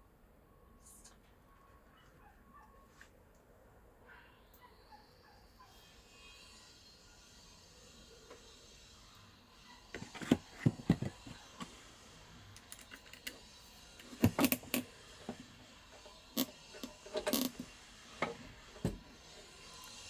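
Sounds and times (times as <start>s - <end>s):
tools and hardware clattering: 10.0s - 11.8s, 12.6s - 13.4s.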